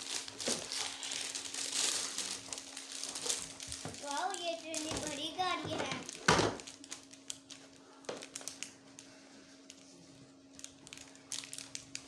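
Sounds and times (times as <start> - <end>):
toy packaging taps and clicks: 3.8 - 7.5.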